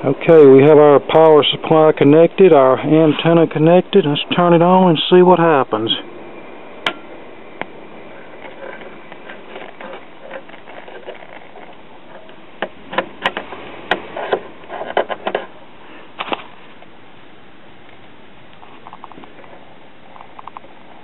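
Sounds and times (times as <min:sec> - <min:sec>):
faint static hiss: 0:00.0 - 0:21.0
radio crackles and clicks: 0:07.6 - 0:15.6.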